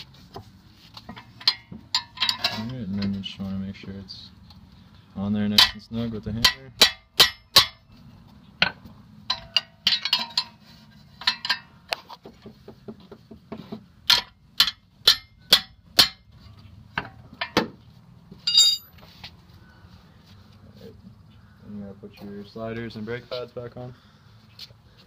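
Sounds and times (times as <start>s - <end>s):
hammer tapping metal: 14.1s - 16.2s
metallic ringing clink: 18.5s - 19.0s.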